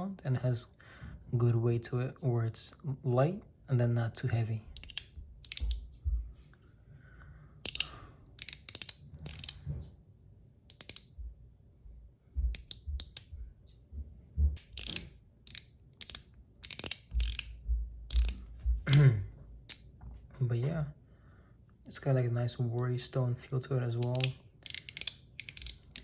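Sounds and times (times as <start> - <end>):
metal slider clicks and scrapes: 4.8 - 5.8, 7.6 - 9.6, 10.7 - 11.1, 14.6 - 17.5, 18.1 - 18.5, 23.9 - 26.0.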